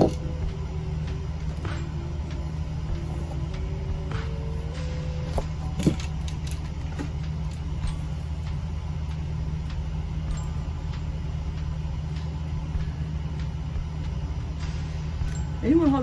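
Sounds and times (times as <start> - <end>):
air conditioner humming: 0.0 - 16.0.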